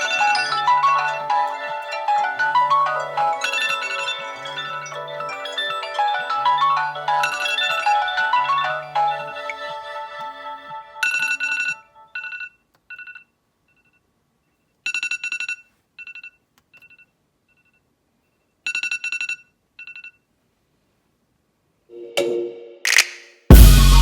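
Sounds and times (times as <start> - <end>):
melodic ringtone: 0.0 - 12.5
phone alarm beeps: 11.0 - 13.3.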